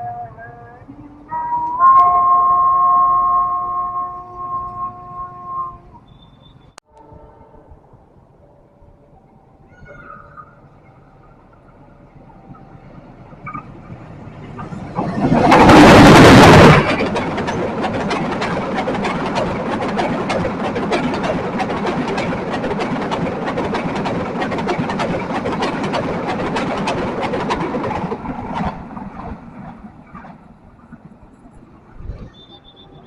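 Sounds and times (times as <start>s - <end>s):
train rushing past: 1.2s - 33.0s
train wheels clacking on rails: 12.0s - 33.0s.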